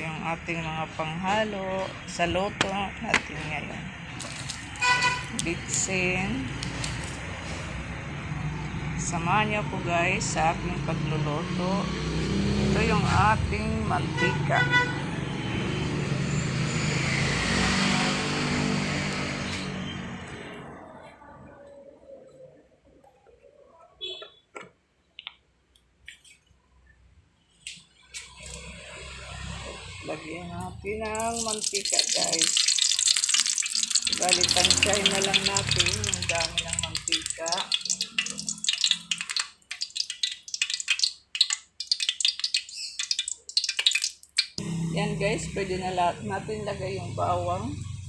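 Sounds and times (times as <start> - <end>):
oil crackling and spattering in pan: 4.1 - 7.7, 31.0 - 44.6.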